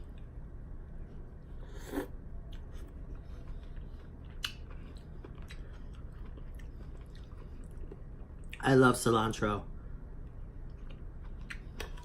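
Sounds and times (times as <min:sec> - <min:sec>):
low steady hum: 0:00.0 - 0:12.0
close chewing: 0:02.5 - 0:08.6.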